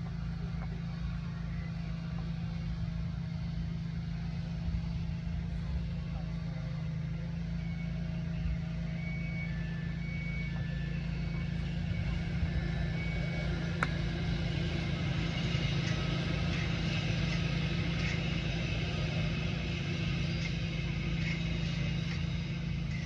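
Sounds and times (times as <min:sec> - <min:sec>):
steady low rumble: 0:00.0 - 0:23.0.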